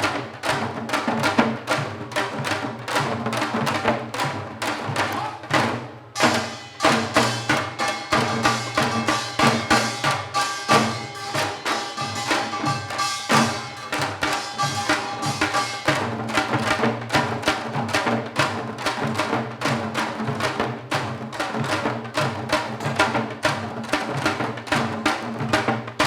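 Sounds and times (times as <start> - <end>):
hourglass drum playing fast rhythm: 0.0 - 26.0.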